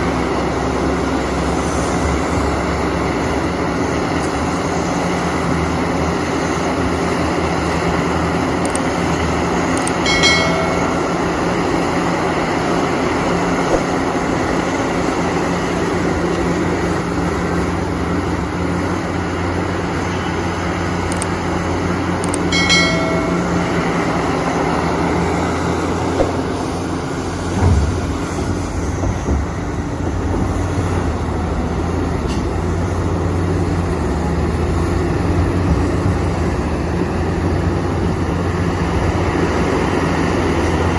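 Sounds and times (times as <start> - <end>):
diesel engine running: 0.0 - 40.9
brief high tones: 22.5 - 24.5.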